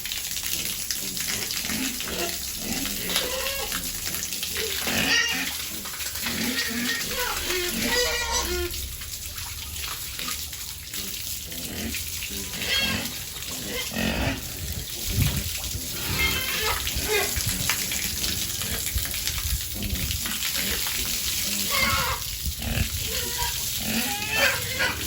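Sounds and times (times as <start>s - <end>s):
running water splashing: 0.0s - 25.0s
piglets squealing: 2.0s - 3.9s, 4.5s - 8.8s, 12.4s - 14.5s, 15.9s - 17.6s, 21.5s - 25.0s.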